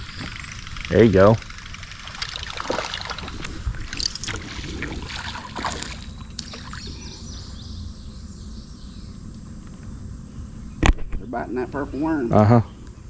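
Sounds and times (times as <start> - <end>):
small water sounds: 0.0 - 7.3
low steady rumble: 0.0 - 13.0.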